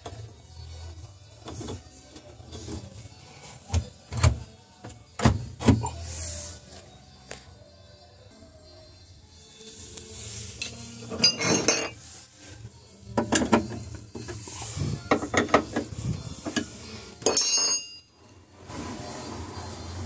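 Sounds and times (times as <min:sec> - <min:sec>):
metal tools clinking and rattling: 0:10.6 - 0:12.0, 0:16.5 - 0:18.1.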